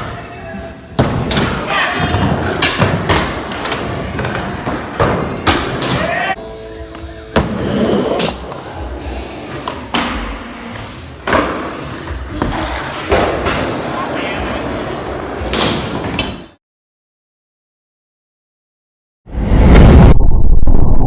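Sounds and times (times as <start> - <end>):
skateboard thumps and slams: 1.0 - 6.2
skateboard wheels rolling: 1.0 - 9.9, 10.6 - 16.6.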